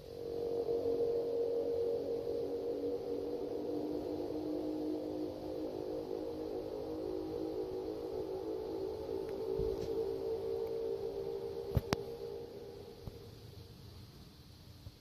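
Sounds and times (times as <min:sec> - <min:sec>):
deep humming drone: 0:00.0 - 0:14.1.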